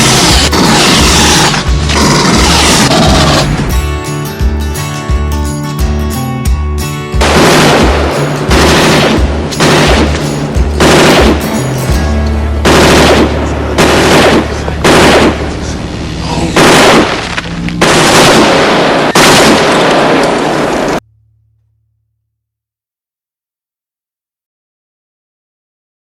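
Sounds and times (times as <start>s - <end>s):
low drone: 0.0s - 3.9s, 7.2s - 19.2s
machine gun bursts: 7.2s - 10.2s, 10.8s - 11.5s, 16.6s - 20.6s.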